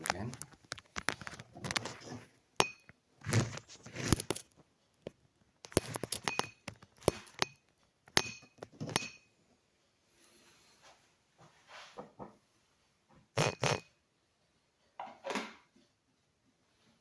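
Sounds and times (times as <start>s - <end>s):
utensils scraping: 3.2s - 4.4s, 5.7s - 7.6s, 13.4s - 13.9s
utensils knocking and clinking: 5.7s - 9.3s.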